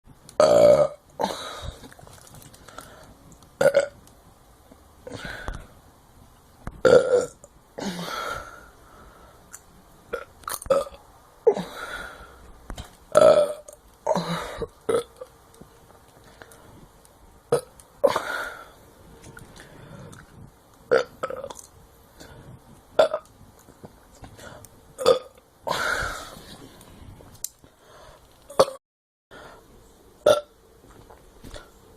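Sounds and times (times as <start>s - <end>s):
person burping: 0.4s - 1.9s, 3.6s - 4.0s, 6.8s - 8.3s, 10.1s - 11.8s, 13.1s - 15.3s, 20.9s - 21.6s, 23.0s - 23.3s, 25.0s - 26.0s, 30.2s - 30.5s.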